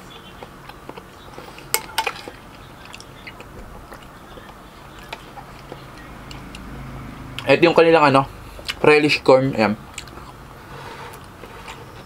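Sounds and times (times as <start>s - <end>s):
utensils clinking and tapping: 1.7s - 2.4s.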